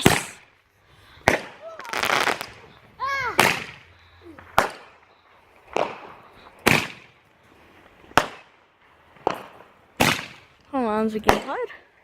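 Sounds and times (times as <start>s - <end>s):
firework bangs: 0.0s - 0.5s, 1.2s - 11.7s.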